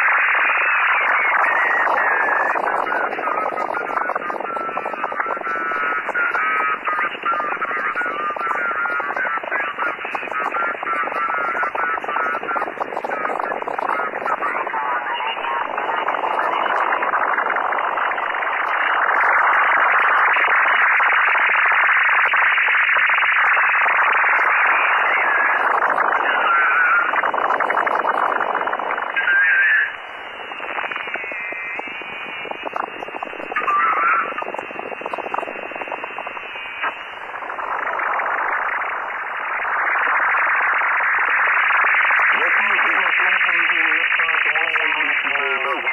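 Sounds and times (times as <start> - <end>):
radio static hiss: 0.0 - 45.9.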